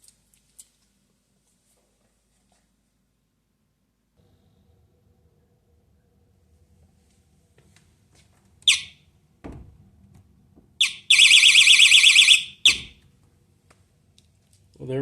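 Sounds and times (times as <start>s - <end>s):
door thumps: 9.4s - 9.8s
warbling alarm tone: 10.8s - 13.0s.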